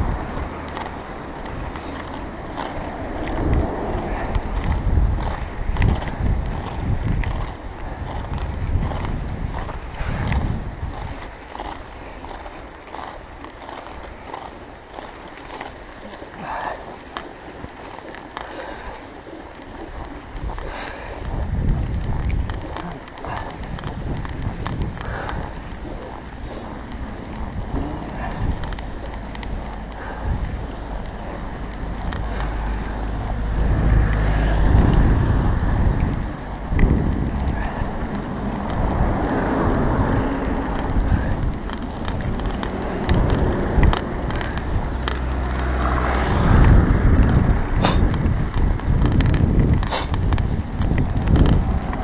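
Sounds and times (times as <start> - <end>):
bicycle tyres rolling through snow: 0.0 - 52.0
wind buffeting microphone: 0.0 - 52.0.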